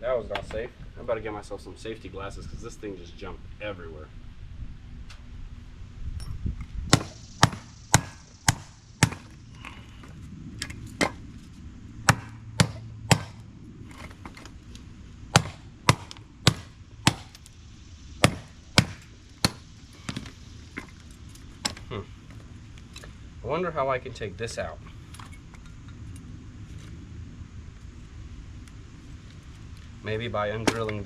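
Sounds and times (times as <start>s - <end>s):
sledgehammer striking metal: 6.9s - 9.4s, 12.0s - 13.4s, 15.3s - 17.4s, 18.2s - 19.7s.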